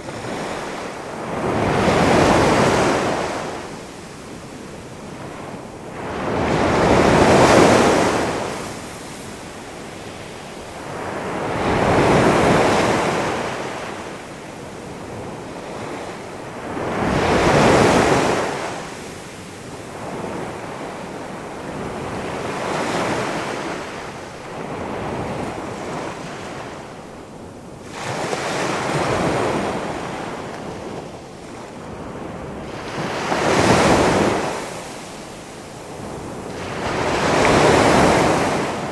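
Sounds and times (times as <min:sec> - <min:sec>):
wind: 0:00.0 - 0:38.9
waves crashing: 0:35.9 - 0:38.9.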